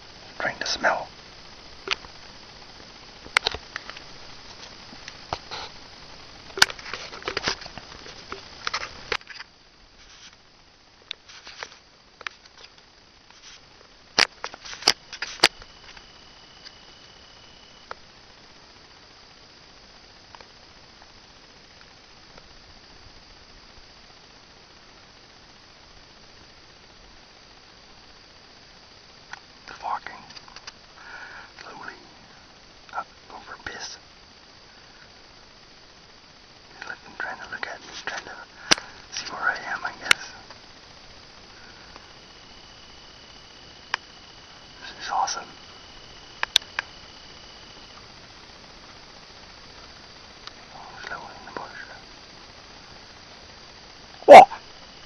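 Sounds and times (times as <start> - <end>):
low steady hiss: 0.0 - 55.0
sharp clicks and snaps: 3.2 - 5.5, 46.4 - 46.9.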